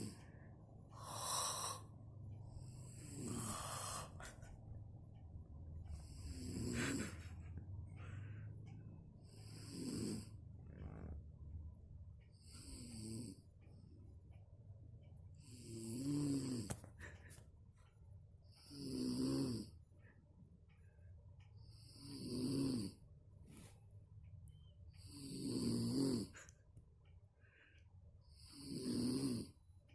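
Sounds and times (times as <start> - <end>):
woman snoring loudly: 0.0 - 0.2, 0.9 - 1.9, 2.5 - 4.2, 6.0 - 7.2, 9.2 - 11.2, 12.5 - 13.4, 15.4 - 16.7, 18.6 - 19.7, 21.7 - 23.0, 25.0 - 26.4, 28.3 - 29.6
quiet breathing: 0.0 - 29.9.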